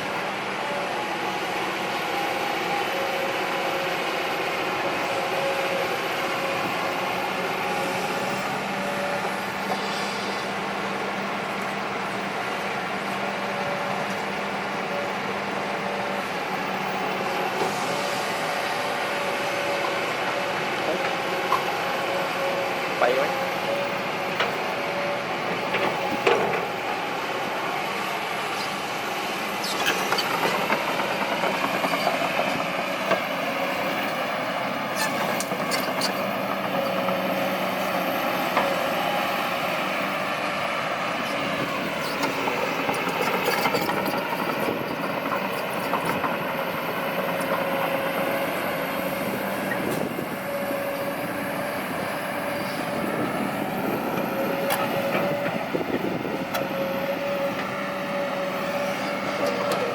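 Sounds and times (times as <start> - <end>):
heavy diesel machinery running: 0.0 - 59.9.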